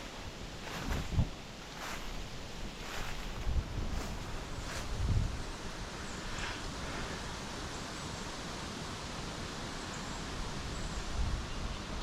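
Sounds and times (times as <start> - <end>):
wind buffeting microphone: 0.0 - 7.5
leaves rustling: 0.0 - 8.1.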